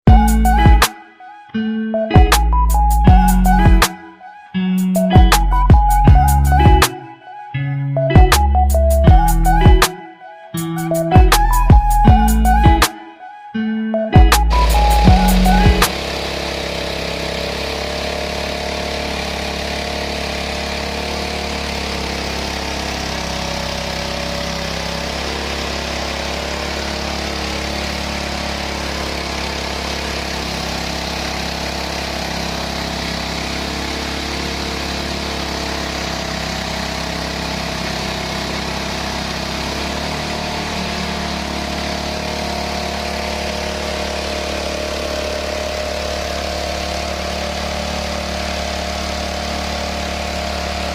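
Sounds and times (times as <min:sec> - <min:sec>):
rice milling machine humming: 0:14.5 - 0:50.9.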